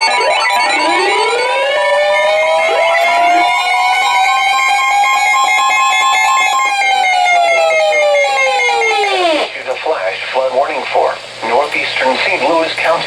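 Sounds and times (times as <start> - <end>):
electronic tones sweeping upward: 0.0 - 9.5
fast pulsing high tone: 0.0 - 9.5.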